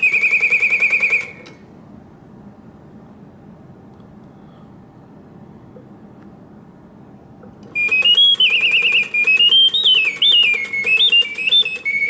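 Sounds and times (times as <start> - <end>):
mechanical bird whistling trills: 0.0 - 1.6, 7.8 - 12.0.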